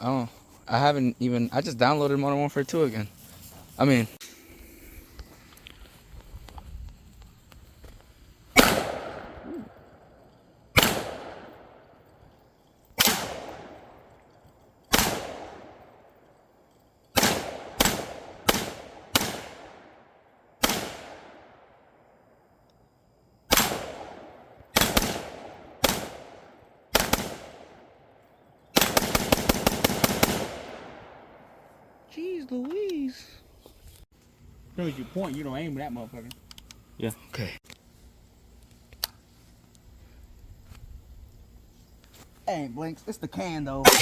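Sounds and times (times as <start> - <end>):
rifle gunshots: 8.6 - 9.4, 10.8 - 11.6, 13.0 - 14.0, 14.9 - 15.9, 17.2 - 20.0, 20.6 - 21.7, 23.5 - 27.8, 28.8 - 31.4.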